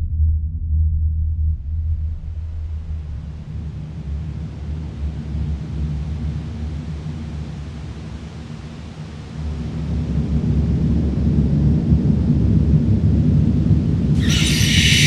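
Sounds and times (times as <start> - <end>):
deep low rumbling drone: 0.0 - 3.0
bright high stacked tones: 14.2 - 15.0.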